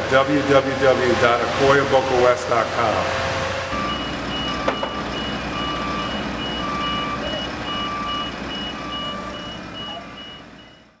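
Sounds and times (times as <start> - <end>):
low engine rumble: 0.0 - 11.0
low slow reversing alarm beeps: 3.6 - 11.0
high quick reversing alarm beeps: 3.7 - 11.0.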